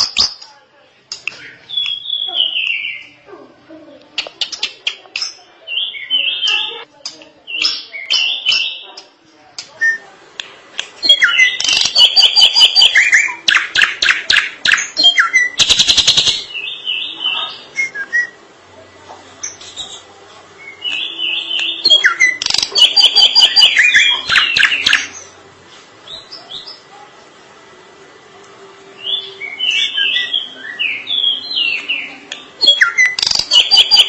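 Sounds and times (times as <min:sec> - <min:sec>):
bird singing whistles and chatter: 0:01.3 - 0:03.2, 0:04.2 - 0:06.8, 0:07.4 - 0:08.9, 0:09.7 - 0:10.1, 0:11.0 - 0:18.4, 0:19.4 - 0:25.4, 0:29.0 - 0:34.0
fast harsh bird rattle: 0:15.6 - 0:16.5, 0:33.1 - 0:33.8.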